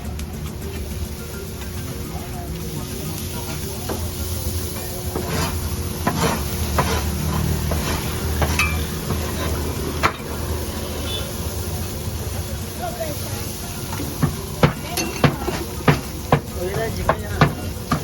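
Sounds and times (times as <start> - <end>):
metal utensil scraping cooking pot: 5.1 - 10.2.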